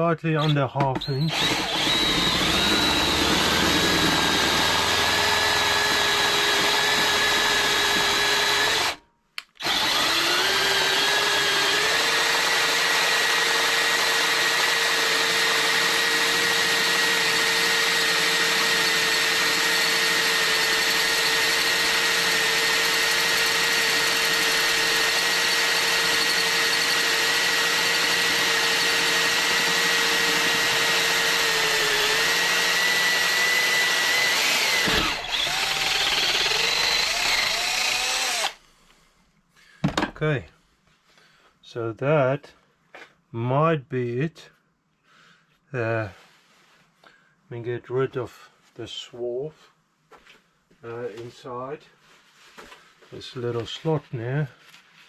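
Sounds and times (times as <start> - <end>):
electric drill boring metal: 1.0 - 9.0, 9.6 - 38.6.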